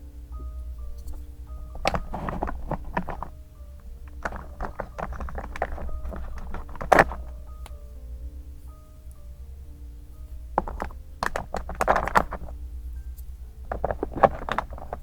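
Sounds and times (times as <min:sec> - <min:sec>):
soft background music: 0:00.0 - 0:15.0
paper rustling and tapping: 0:01.0 - 0:07.5, 0:10.6 - 0:12.6, 0:13.6 - 0:15.0.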